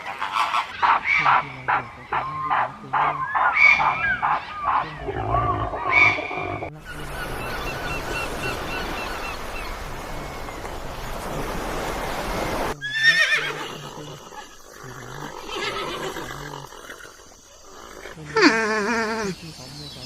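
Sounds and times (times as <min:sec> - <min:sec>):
horse whinnying: 0:12.8 - 0:19.4.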